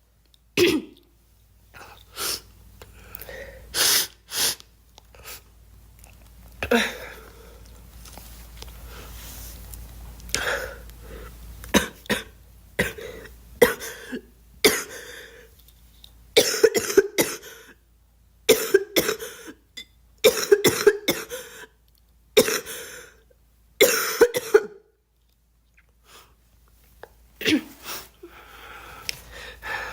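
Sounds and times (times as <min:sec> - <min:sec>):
girl coughing: 0:00.6 - 0:01.0, 0:11.8 - 0:15.0, 0:16.4 - 0:17.6, 0:18.5 - 0:19.6, 0:20.2 - 0:21.5, 0:22.4 - 0:22.8, 0:23.8 - 0:24.8, 0:27.4 - 0:27.8.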